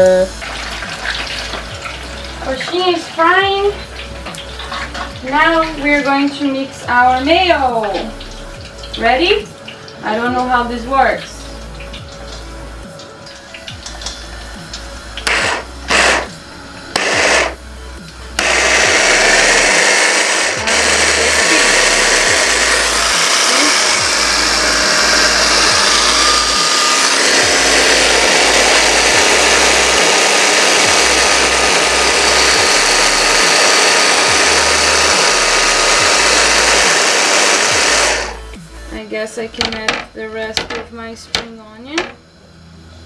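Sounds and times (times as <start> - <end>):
electric mixer motor running: 13.9 - 17.7, 18.3 - 38.6.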